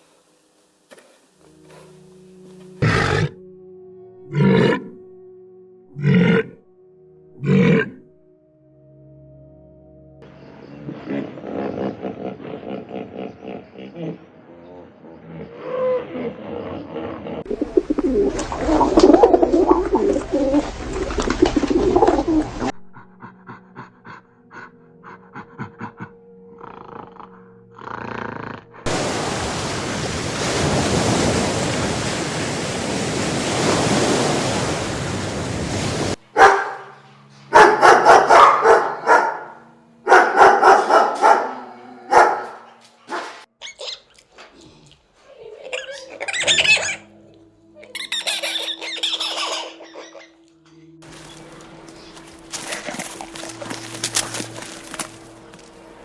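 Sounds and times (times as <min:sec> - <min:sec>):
dog barking: 0:36.4 - 0:43.4.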